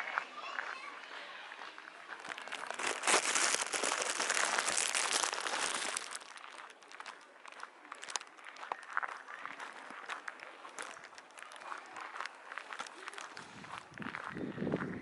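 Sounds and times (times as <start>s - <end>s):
scattered crackles and clicks: 2.1s - 13.5s
loud rustling and crackling: 2.2s - 7.2s.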